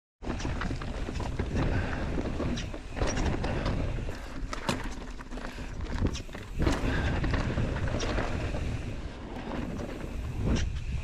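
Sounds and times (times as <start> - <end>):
bike tyres rumbling over dirt: 0.2 - 11.0.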